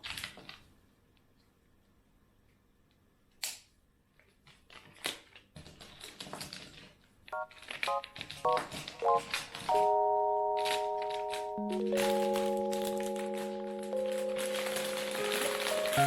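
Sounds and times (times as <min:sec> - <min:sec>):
plucked music melody: 0:07.4 - 0:16.0.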